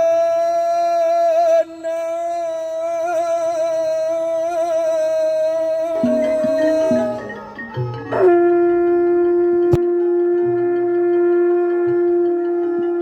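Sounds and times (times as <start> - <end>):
long held note: 2.9 - 13.0.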